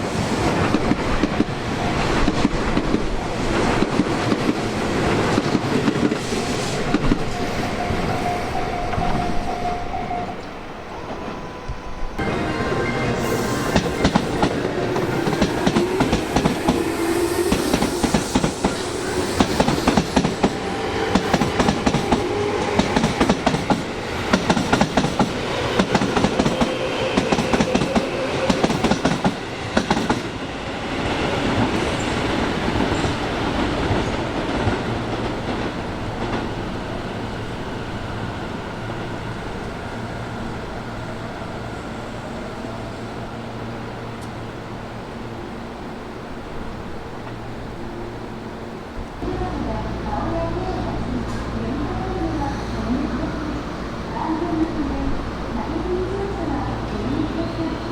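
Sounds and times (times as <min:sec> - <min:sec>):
train rumble: 0:00.0 - 0:57.9.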